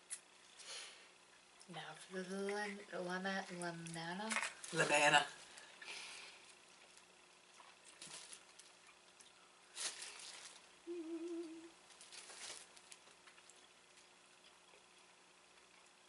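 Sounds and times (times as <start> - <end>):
closed-mouth hum: 0.0 - 16.0
person chewing soft candy: 6.8 - 9.6, 13.0 - 16.0
mouth noises: 10.9 - 11.7.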